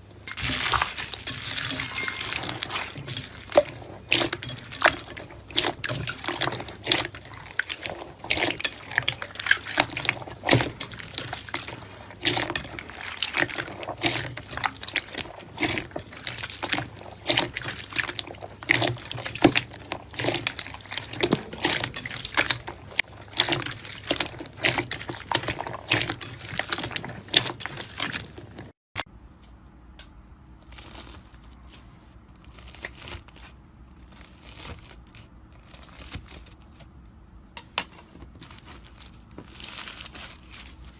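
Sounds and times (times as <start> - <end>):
slime squishing with wet pops: 30.0 - 40.9.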